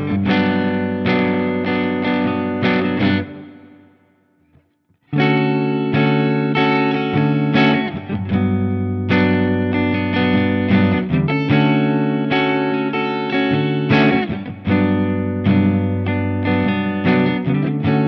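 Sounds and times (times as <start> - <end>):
electric guitar strummed chords: 0.0 - 18.0.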